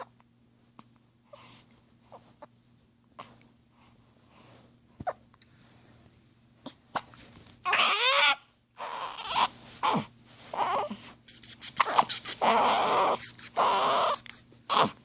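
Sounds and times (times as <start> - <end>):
newborn baby crying: 7.6 - 11.1, 11.8 - 15.0
baby fussing: 7.7 - 15.0.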